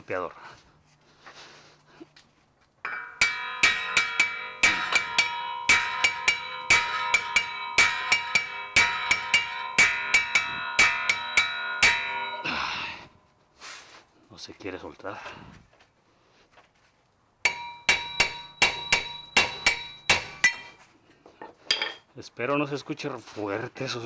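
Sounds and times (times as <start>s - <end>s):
hammer blows on steel: 2.9s - 13.1s, 17.5s - 20.8s.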